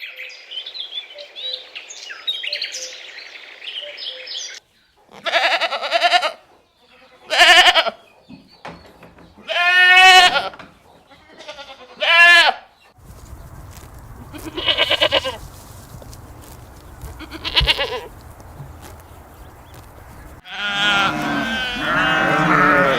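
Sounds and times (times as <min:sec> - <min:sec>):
goats bleating: 0:05.1 - 0:08.0, 0:09.4 - 0:10.5, 0:11.1 - 0:12.7, 0:14.2 - 0:15.4, 0:16.8 - 0:22.9.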